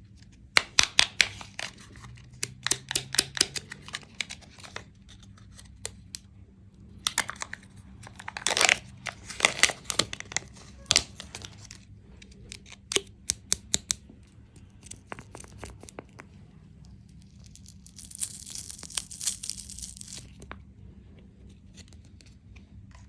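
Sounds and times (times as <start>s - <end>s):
plastic wrapper tearing: 0.6s - 5.8s, 7.0s - 13.0s, 14.7s - 16.2s, 17.2s - 20.5s
plastic wrapper crackling: 0.6s - 6.1s, 7.0s - 14.0s, 14.6s - 16.3s, 16.9s - 20.6s.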